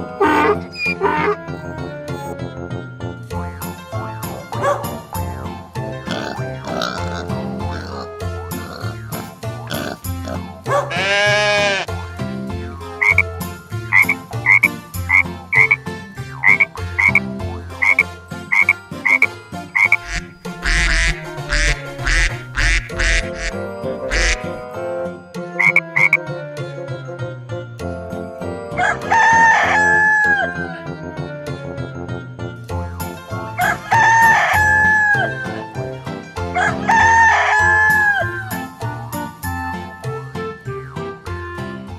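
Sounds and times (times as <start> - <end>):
rasping croak-like bursts: 0.0 - 1.5, 6.0 - 11.9, 13.0 - 24.6, 25.6 - 26.2
light background music: 0.0 - 41.9
low pulsing beat: 19.8 - 24.6
rooster crowing: 28.8 - 30.6, 33.6 - 35.3, 36.6 - 38.3.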